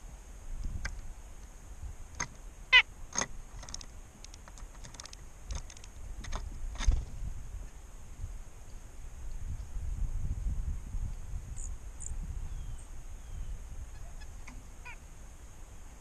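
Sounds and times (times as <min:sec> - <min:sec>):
steady high hiss: 0:00.0 - 0:16.0
bird squawking: 0:13.9 - 0:15.0.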